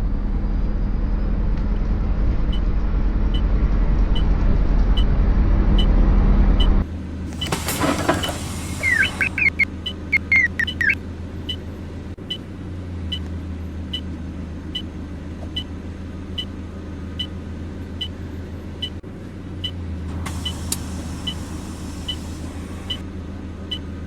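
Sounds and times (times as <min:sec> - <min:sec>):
bus engine idling: 0:00.8 - 0:12.4, 0:20.0 - 0:24.0
brief hiss: 0:07.3 - 0:09.5, 0:20.1 - 0:23.0
hazard light ticking: 0:09.4 - 0:11.6.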